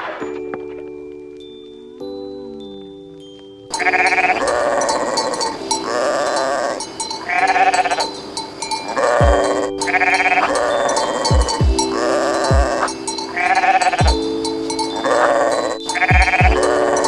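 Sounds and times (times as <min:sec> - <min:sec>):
background music: 0:00.0 - 0:17.0
chime-like music notes: 0:00.0 - 0:17.0
sheep bleating: 0:03.8 - 0:08.1, 0:08.9 - 0:14.2, 0:15.0 - 0:17.0.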